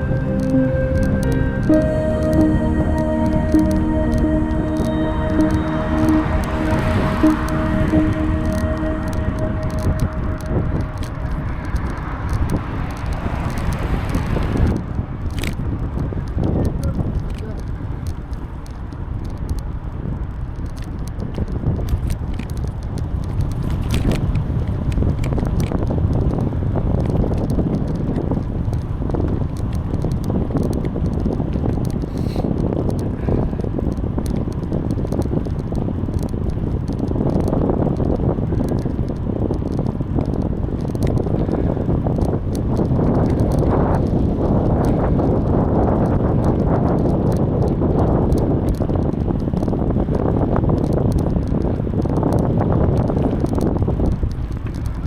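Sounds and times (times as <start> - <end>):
bicycle tyre rumble: 11.0 - 55.0
small clicks and rattles: 15.2 - 55.0
wind buffeting microphone: 19.0 - 55.0.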